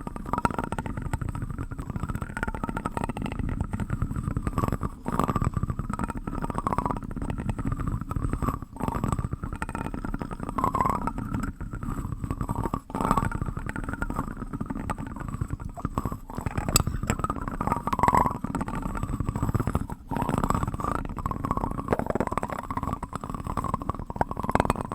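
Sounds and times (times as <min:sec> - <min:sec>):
plastic spoon clicking and rubbing: 0:15.7 - 0:17.8.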